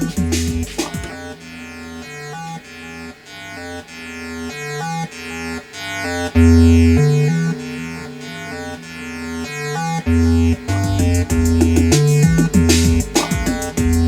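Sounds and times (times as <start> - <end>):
bass line: 0.0 - 1.7, 6.4 - 14.0
chiptune square-wave notes: 0.0 - 2.3, 6.1 - 14.0.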